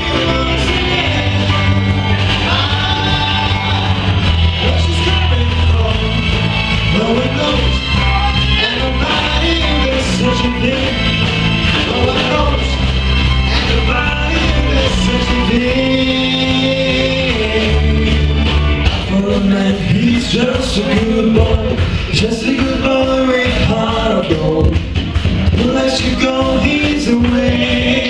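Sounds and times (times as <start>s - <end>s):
wavering lead melody: 0.0s - 18.8s
bass guitar: 0.0s - 28.0s
drums: 0.0s - 28.0s.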